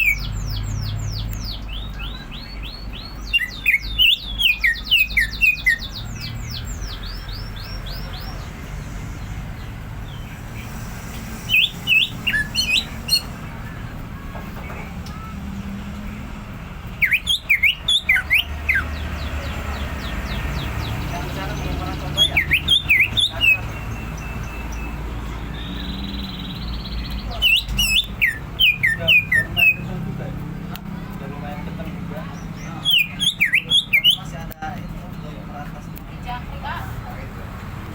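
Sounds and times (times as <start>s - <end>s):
bird singing whistled notes: 0.0s - 8.6s, 11.4s - 13.9s, 16.9s - 30.0s, 32.3s - 35.3s.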